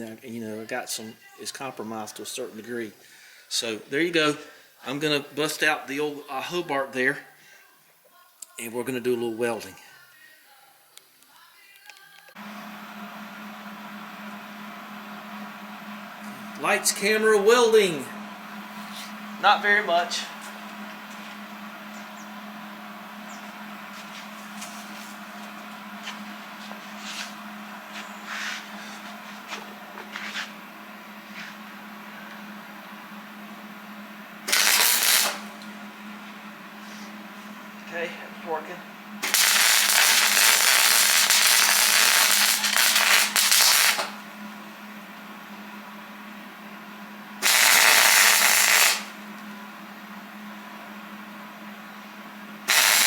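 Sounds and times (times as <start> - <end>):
low hum: 12.4 - 39.7
welding arc sputtering: 13.1 - 30.6, 34.1 - 44.4, 47.4 - 49.4, 52.6 - 53.0.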